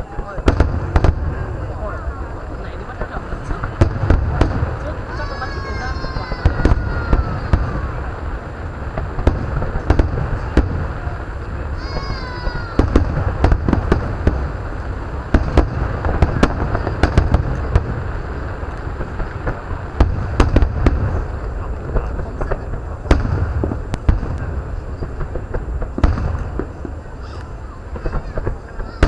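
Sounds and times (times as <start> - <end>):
fireworks bangs: 0.0 - 29.0
falling whistle of fireworks: 3.4 - 29.0.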